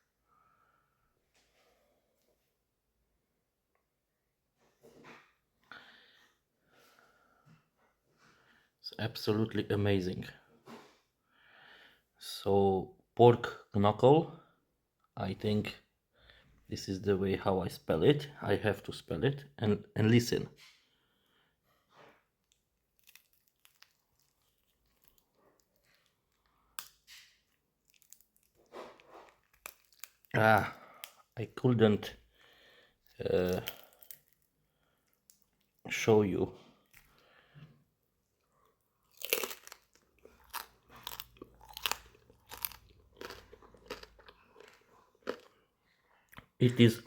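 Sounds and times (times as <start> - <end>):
pork skin crackling: 22.5 - 31.4, 32.3 - 35.9, 39.0 - 45.6.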